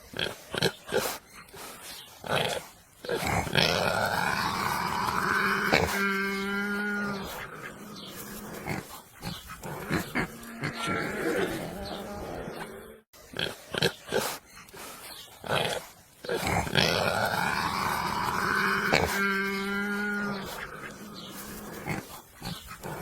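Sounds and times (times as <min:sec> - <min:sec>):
pigs grunting: 0:00.0 - 0:23.0
pig squealing: 0:02.3 - 0:14.4, 0:15.5 - 0:23.0.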